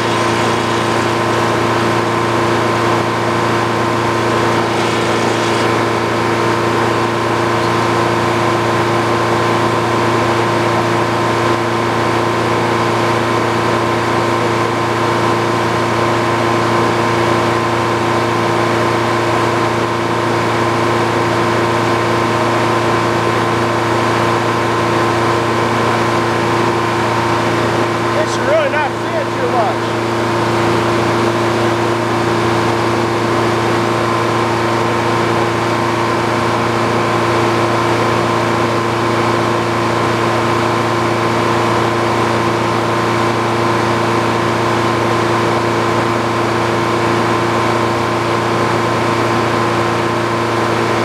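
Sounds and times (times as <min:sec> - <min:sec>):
sawmill machinery humming: 0:00.0 - 0:16.5, 0:22.3 - 0:41.5.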